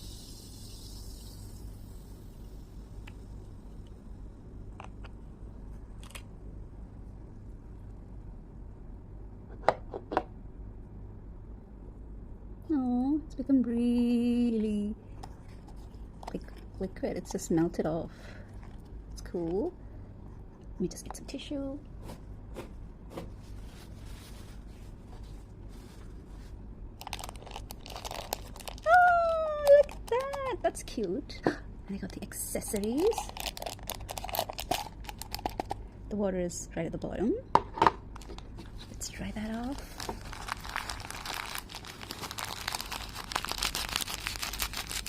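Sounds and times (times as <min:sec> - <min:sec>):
low steady hum: 0:00.0 - 0:45.0
tissue paper rustling: 0:23.4 - 0:28.9, 0:38.6 - 0:45.0.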